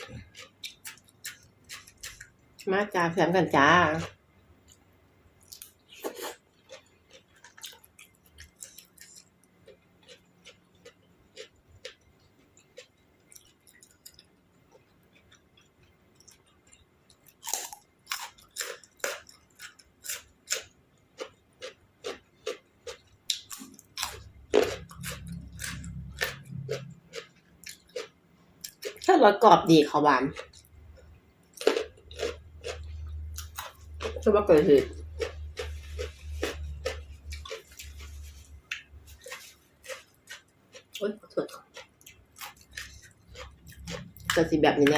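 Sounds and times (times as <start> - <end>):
person chewing crunchy food: 0.0 - 2.7, 5.4 - 29.1, 30.2 - 44.9
low hum: 24.2 - 27.6.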